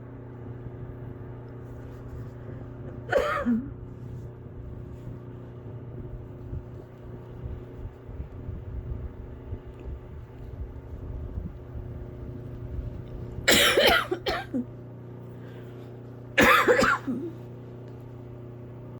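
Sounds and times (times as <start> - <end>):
person coughing harshly: 3.1 - 3.8, 13.5 - 14.7, 16.4 - 17.4.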